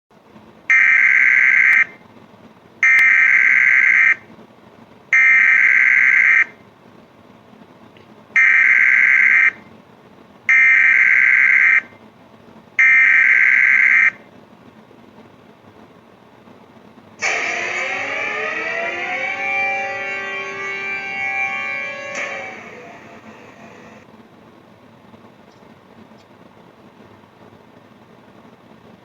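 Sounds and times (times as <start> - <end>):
harsh buzzing alarm beeps: 8.4 - 9.6, 17.2 - 24.0.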